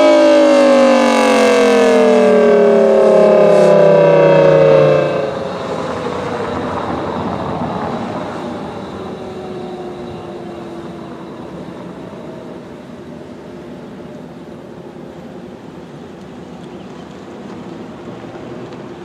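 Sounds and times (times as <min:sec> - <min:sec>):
warning siren winding down: 0:00.0 - 0:16.0
steady rushing noise: 0:01.7 - 0:13.8.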